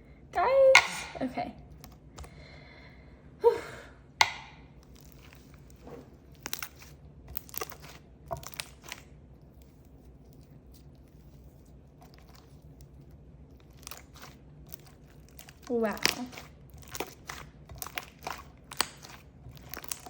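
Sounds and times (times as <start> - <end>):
slime squished by hand: 4.3 - 20.0.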